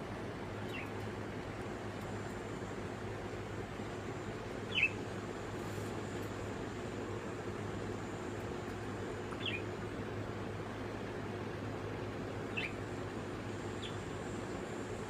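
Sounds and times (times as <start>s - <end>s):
low background hum: 0.0s - 15.0s
budgerigars chirping: 4.7s - 5.0s, 9.4s - 9.6s, 12.5s - 12.8s, 13.8s - 14.0s.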